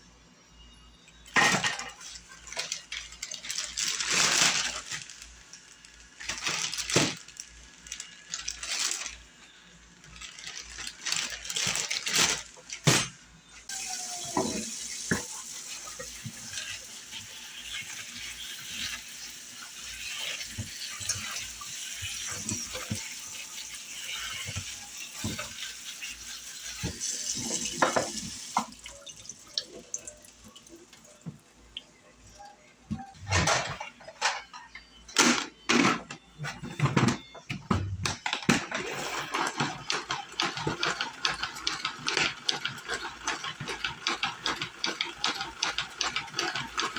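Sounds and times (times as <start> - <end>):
tap water running into sink: 13.7 - 31.4.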